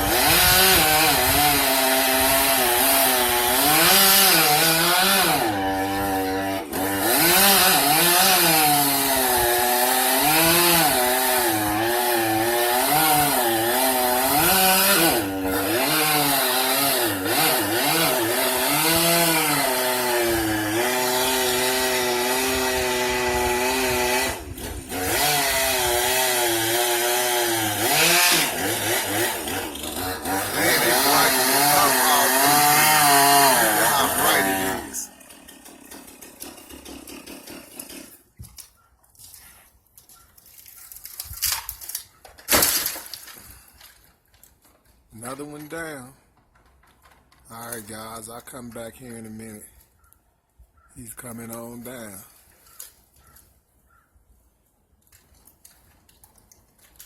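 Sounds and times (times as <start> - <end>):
chainsaw cutting wood: 0.0 - 38.6, 41.0 - 44.6.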